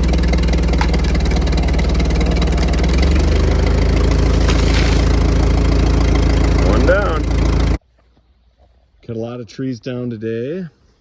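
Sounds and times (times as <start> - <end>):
tractor engine under load: 0.0 - 7.8.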